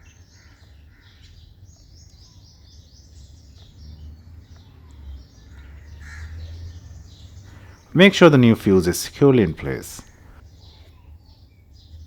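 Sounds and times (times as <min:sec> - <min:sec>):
small birds chirping: 0:00.0 - 0:12.0.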